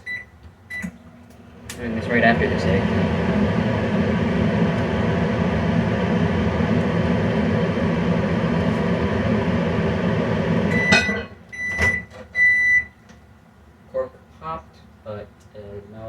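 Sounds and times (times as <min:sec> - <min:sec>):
microwave beeps: 0:00.0 - 0:01.0, 0:08.4 - 0:13.0
microwave oven humming: 0:00.0 - 0:13.8
microwave click: 0:08.5 - 0:12.0.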